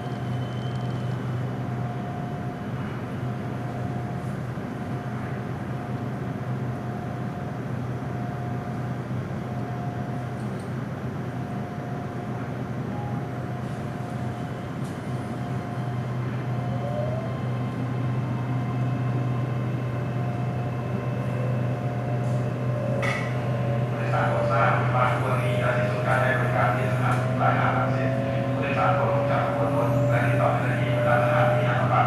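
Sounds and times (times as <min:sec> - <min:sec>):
electric train hum and rumble: 0:00.0 - 0:32.0
train motor whine: 0:14.6 - 0:32.0.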